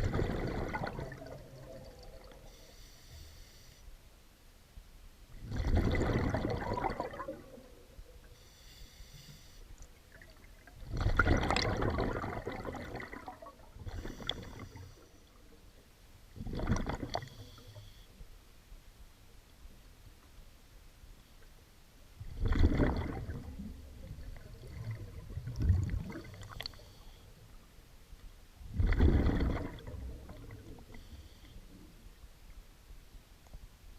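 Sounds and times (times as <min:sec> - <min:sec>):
exhaled air bubbling underwater: 0:00.0 - 0:03.2, 0:05.3 - 0:18.0, 0:22.2 - 0:27.7, 0:28.6 - 0:32.1
regulator inhalation hiss: 0:02.4 - 0:03.9, 0:08.4 - 0:09.7.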